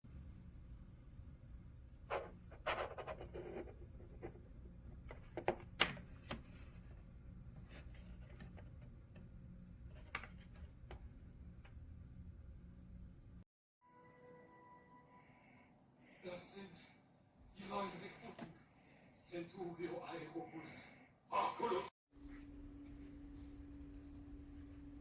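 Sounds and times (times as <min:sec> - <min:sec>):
steady low hum: 0:06.1 - 0:13.4, 0:22.2 - 0:25.0.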